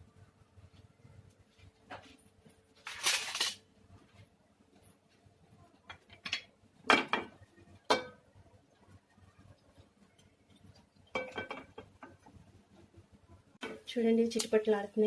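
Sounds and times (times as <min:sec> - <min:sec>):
metal utensil clattering in pan: 0:05.9 - 0:08.2, 0:11.0 - 0:12.2.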